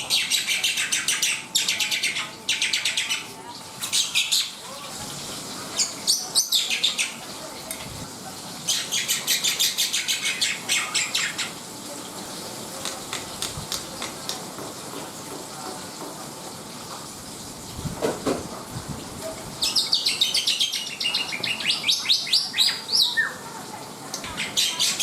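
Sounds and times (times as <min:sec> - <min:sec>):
bird chattering song: 0:00.0 - 0:04.7, 0:05.6 - 0:07.4, 0:08.6 - 0:11.7, 0:19.6 - 0:23.5, 0:24.1 - 0:25.0.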